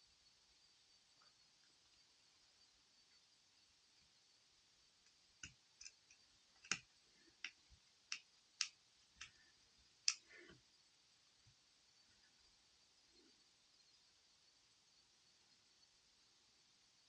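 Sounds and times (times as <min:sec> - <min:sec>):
small tools clicking on phone frame: 0:05.4 - 0:06.8.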